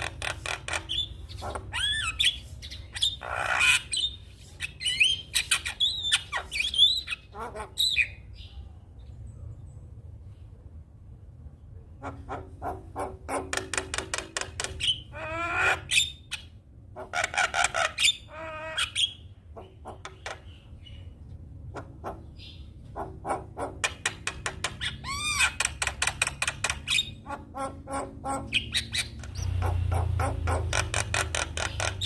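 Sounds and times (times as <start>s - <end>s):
bird singing with clicks and chatter: 0.0s - 9.3s, 13.4s - 15.1s, 17.2s - 27.5s, 28.3s - 32.0s.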